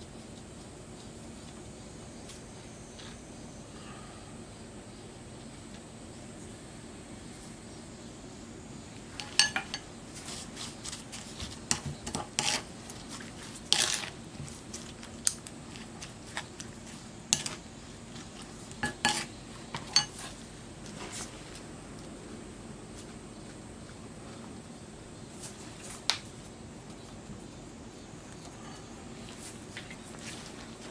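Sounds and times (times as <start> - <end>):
metal utensils clinking on dishes: 9.1 - 9.9, 18.8 - 20.3.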